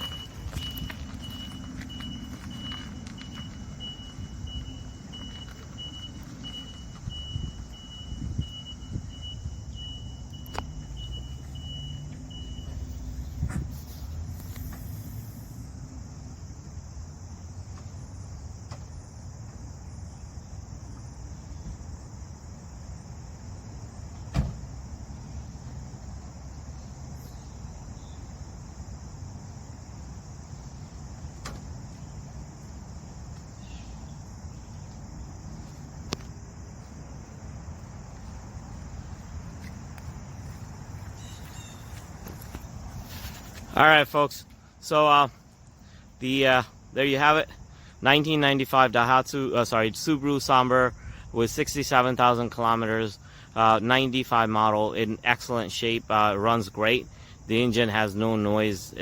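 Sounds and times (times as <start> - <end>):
high warning beeps: 0.0 - 13.0.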